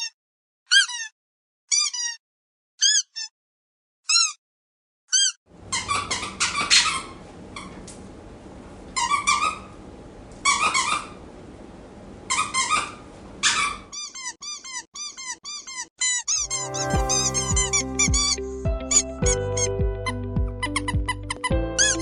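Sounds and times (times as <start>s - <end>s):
squeaky dog toy squeaks: 0.0s - 2.2s, 2.8s - 3.3s, 4.1s - 4.4s, 5.1s - 7.0s, 12.3s - 18.4s, 21.8s - 22.0s.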